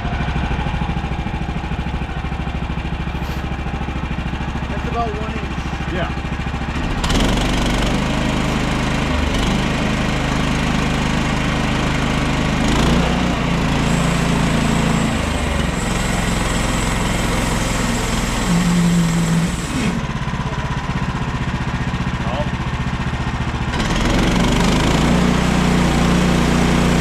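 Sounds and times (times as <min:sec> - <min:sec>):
small gas engine running: 0:00.0 - 0:27.0
band blade sawing board: 0:03.1 - 0:03.5, 0:12.9 - 0:20.2.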